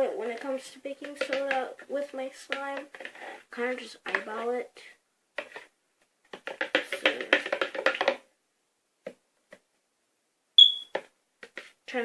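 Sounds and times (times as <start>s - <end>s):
faint taps: 0.4s - 1.7s
tapping and knocking in plastic bucket: 0.4s - 1.7s, 6.3s - 8.3s.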